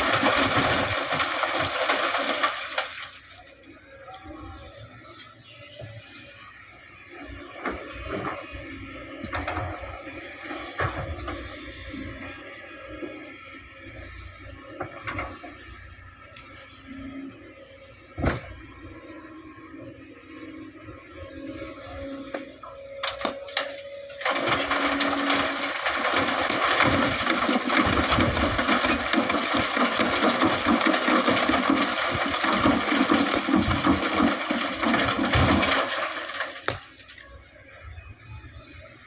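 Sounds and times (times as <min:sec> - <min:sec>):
sand and stones pouring into steel bed: 0:00.0 - 0:03.4, 0:24.2 - 0:37.1.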